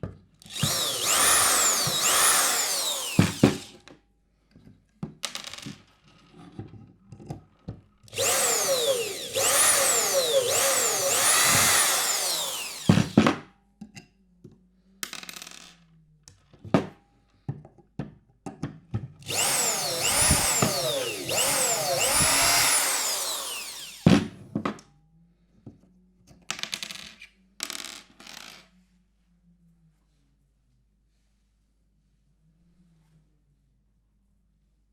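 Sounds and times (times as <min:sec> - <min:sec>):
screwdriver clicks: 0:00.5 - 0:03.7, 0:08.2 - 0:13.2, 0:19.3 - 0:24.0
electric screwdriver driving screws: 0:00.5 - 0:03.8, 0:08.2 - 0:13.4, 0:19.3 - 0:24.3.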